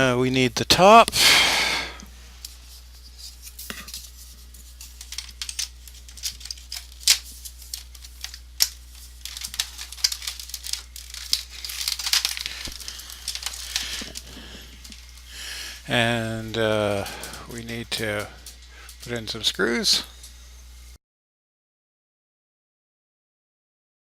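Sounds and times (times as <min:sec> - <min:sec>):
low steady hum: 0:00.0 - 0:21.0
plastic parts clicking and tapping: 0:05.0 - 0:15.0.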